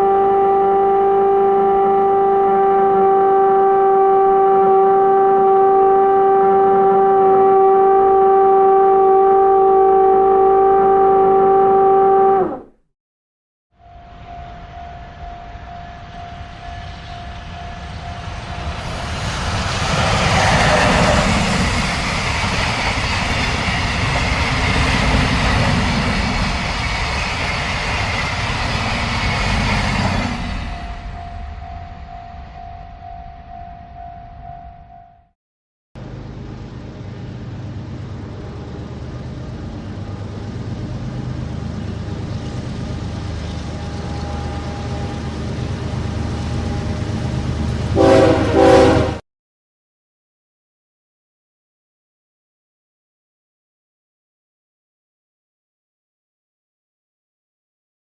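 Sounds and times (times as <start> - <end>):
train horn blast: 0.0 - 12.7, 47.9 - 49.2
train rumble and rail noise: 13.8 - 35.0, 36.0 - 49.2.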